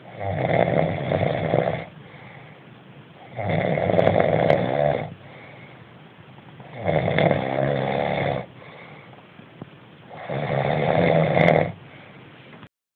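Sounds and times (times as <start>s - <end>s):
loud snoring: 0.0s - 2.0s, 3.2s - 5.2s, 6.6s - 8.9s, 10.1s - 11.8s.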